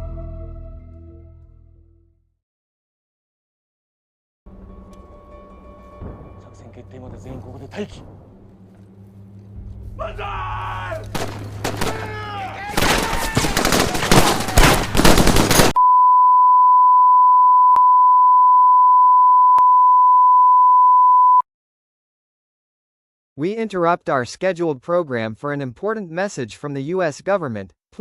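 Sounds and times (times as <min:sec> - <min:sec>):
broadcast test tone: 0:15.8 - 0:21.4.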